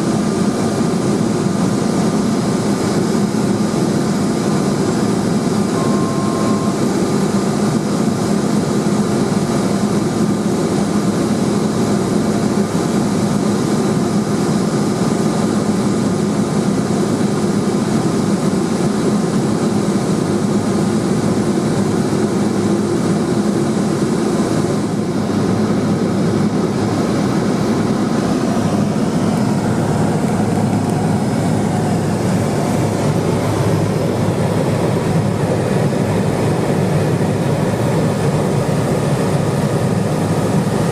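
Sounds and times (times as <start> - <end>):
propeller plane engine drone: 0.0 - 40.9.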